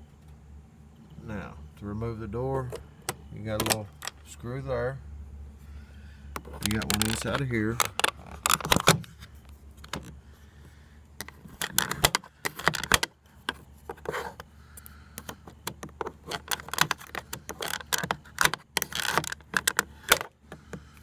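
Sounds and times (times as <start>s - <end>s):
hand tool clicking and scraping: 2.7s - 4.2s, 6.4s - 10.2s, 11.2s - 21.0s.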